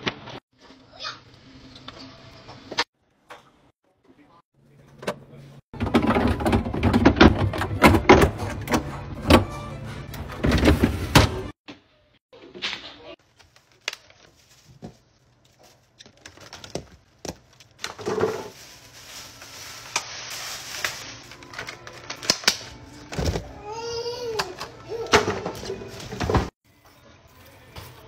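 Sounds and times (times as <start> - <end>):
groceries clicking and knocking: 4.8 - 11.6, 12.4 - 23.5, 24.3 - 26.5.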